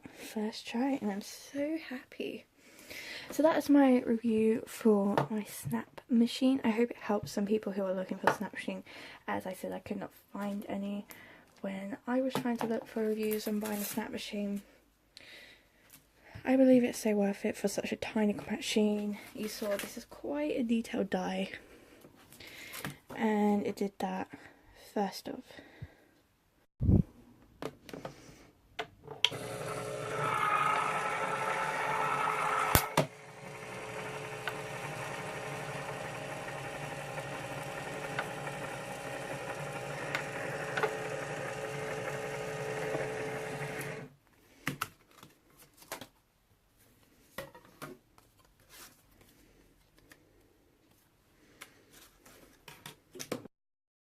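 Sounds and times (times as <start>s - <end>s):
small motor whirring: 29.3s - 44.1s.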